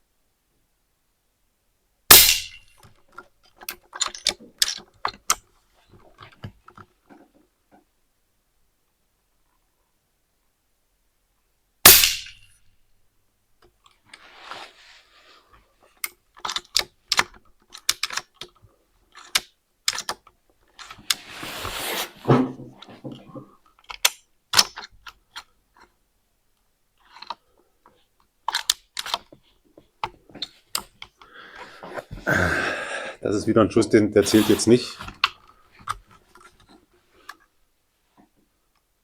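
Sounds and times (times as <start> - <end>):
rifle metallic clicks and rustles: 2.2 - 7.8, 15.9 - 21.3, 22.8 - 26.0, 27.0 - 31.3.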